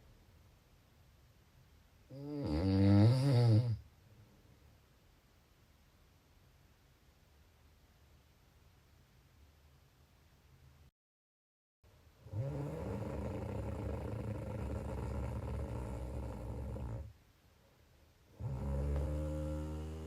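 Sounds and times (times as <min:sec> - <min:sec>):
long low droning snore: 0:02.1 - 0:03.8, 0:12.2 - 0:17.1, 0:18.4 - 0:20.0.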